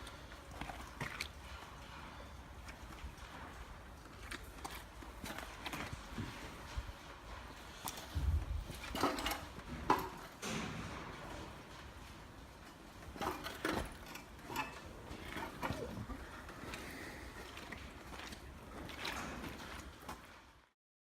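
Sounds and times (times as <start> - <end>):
irregular knocks and clunks: 5.8 - 14.6.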